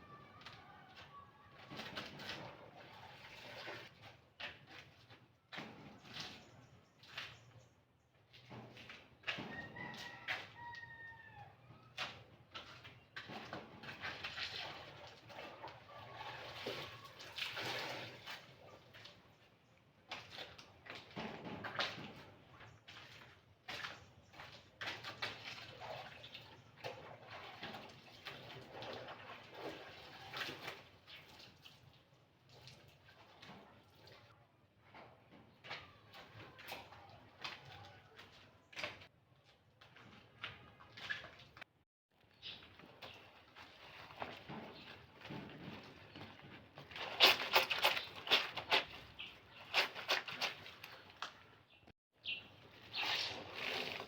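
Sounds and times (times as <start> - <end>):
clothes scrubbed in water: 0.9 - 10.6, 11.9 - 41.8, 42.6 - 51.4, 52.6 - 54.0
wet fabric splashing in water: 12.0 - 19.4, 43.0 - 51.4.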